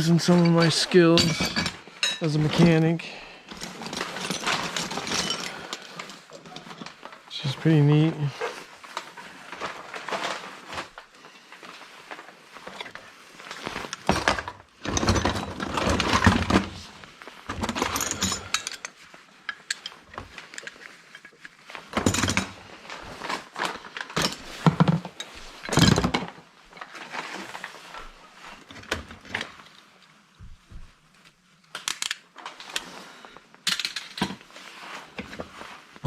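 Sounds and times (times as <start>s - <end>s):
rummaging through tools: 0.0s - 36.0s
metal hand tools clinking: 0.2s - 2.7s, 17.8s - 20.0s.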